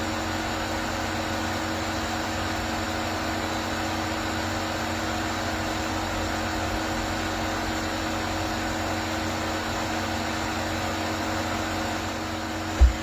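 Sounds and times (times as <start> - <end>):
idling vehicle hum: 12.0 - 13.0.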